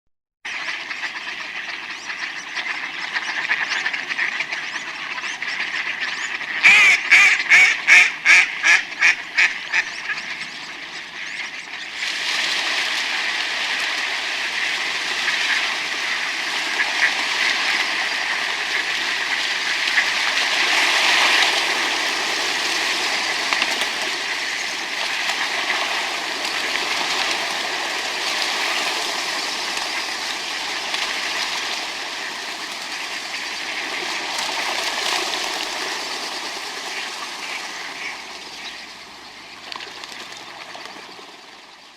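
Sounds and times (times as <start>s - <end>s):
ducks quacking: 0.5s - 12.0s, 15.2s - 21.9s, 36.8s - 40.4s
rushing water: 2.8s - 41.7s.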